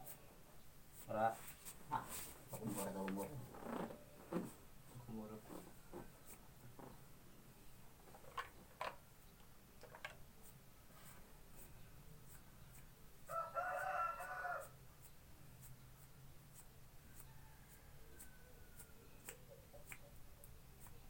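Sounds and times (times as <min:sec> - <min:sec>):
rooster crowing: 0:13.3 - 0:14.8, 0:17.2 - 0:19.0.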